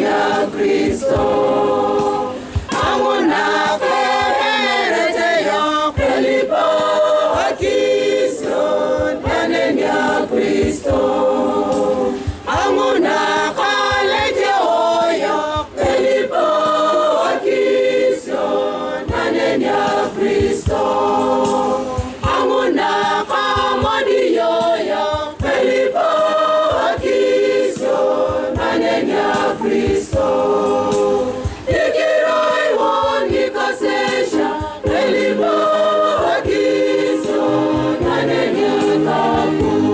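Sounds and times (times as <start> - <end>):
choir singing a hymn: 0.0 - 39.9.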